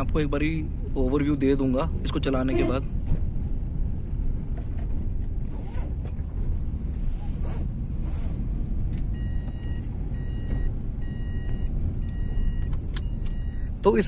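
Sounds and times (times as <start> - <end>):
car engine rumble: 0.0 - 14.0
electronic warning chime beeping: 9.2 - 13.8.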